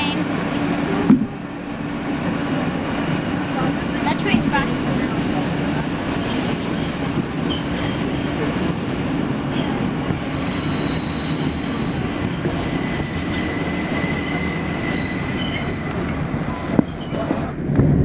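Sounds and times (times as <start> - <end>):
subway train rumbling: 0.0 - 18.0
train wheels squealing: 6.3 - 8.1, 9.6 - 17.5.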